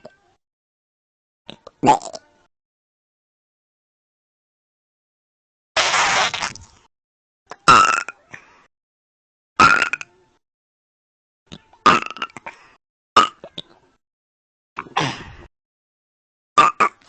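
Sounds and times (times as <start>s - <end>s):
loud burps: 1.6s - 2.2s, 7.6s - 8.2s, 9.6s - 10.1s, 11.8s - 12.6s, 13.2s - 13.6s, 16.6s - 17.0s.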